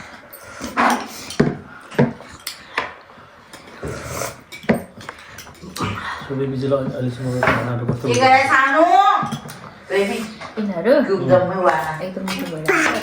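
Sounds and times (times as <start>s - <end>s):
cutlery and dishes clinking: 0.2s - 6.0s, 6.8s - 9.7s, 11.7s - 13.0s.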